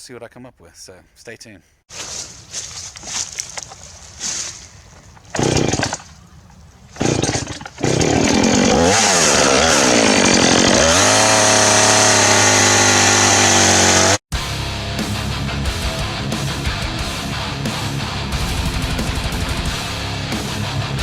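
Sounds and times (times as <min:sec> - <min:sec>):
chainsaw starting and revving: 0:02.0 - 0:14.2.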